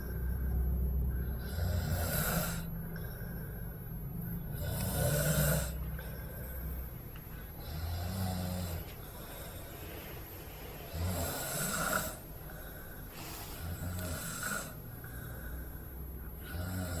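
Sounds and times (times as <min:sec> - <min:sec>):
man snoring: 0:01.4 - 0:03.2, 0:04.5 - 0:06.5, 0:07.5 - 0:09.7, 0:10.8 - 0:12.3, 0:13.2 - 0:15.6, 0:16.4 - 0:17.0.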